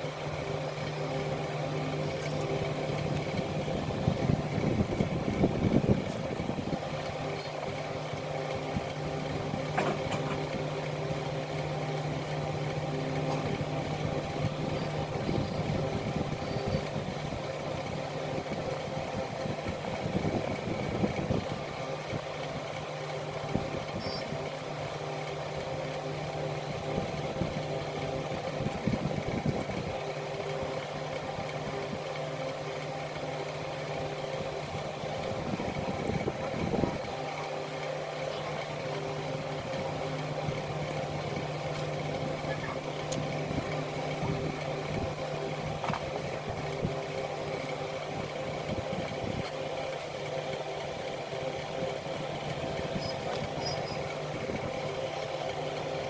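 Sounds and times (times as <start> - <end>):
steady mechanical hum: 0.0 - 56.0.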